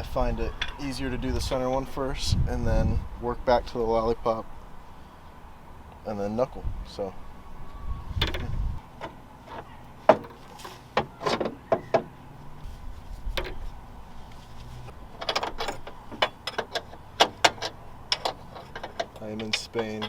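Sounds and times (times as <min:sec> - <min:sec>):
metal tools clinking and knocking: 0:15.2 - 0:20.0.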